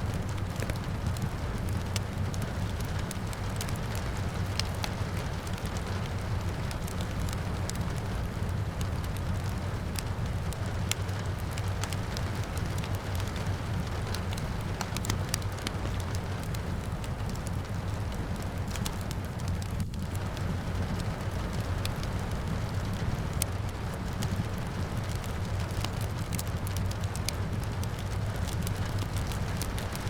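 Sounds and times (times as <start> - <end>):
rain falling: 0.0 - 30.0
wood fire crackling and popping: 0.0 - 30.0.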